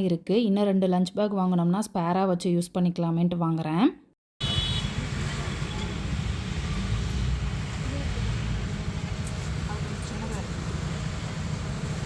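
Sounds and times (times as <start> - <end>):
car engine rumble: 4.4 - 12.0
road noise: 4.4 - 12.0.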